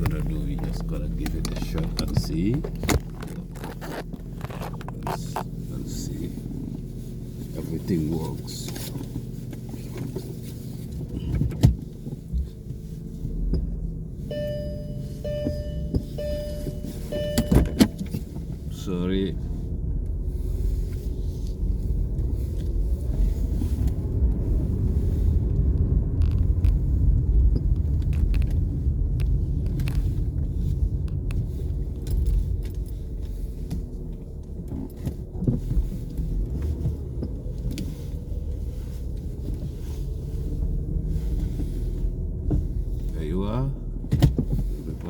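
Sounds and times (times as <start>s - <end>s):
light clicks and rattles: 0.0s - 6.4s, 25.5s - 43.3s
car engine and road rumble: 0.0s - 45.0s.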